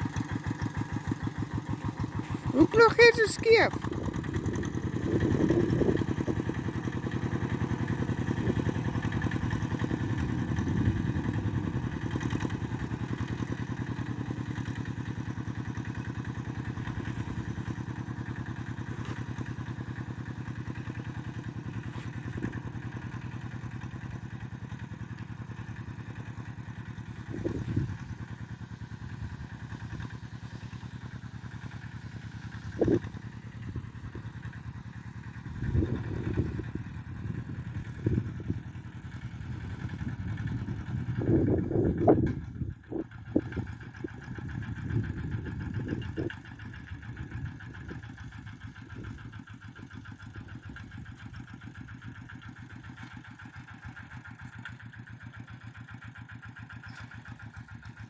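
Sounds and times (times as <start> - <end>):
motorised plough engine running: 0.0 - 58.0.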